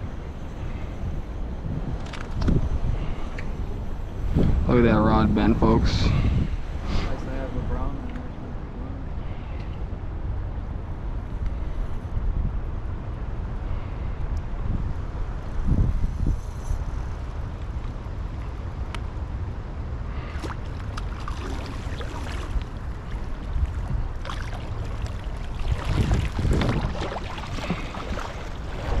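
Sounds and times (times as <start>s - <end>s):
wind buffeting microphone: 0.0s - 29.0s
water splashing and sloshing: 20.1s - 29.0s.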